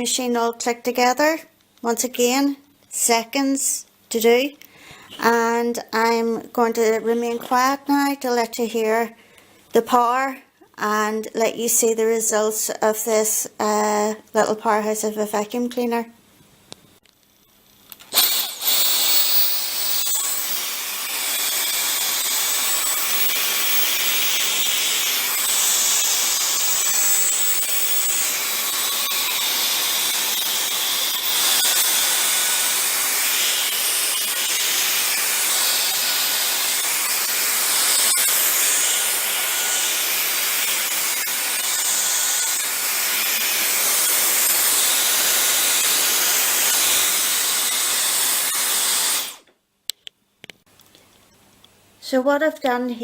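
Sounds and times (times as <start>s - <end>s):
stick vacuum running: 18.1s - 49.5s.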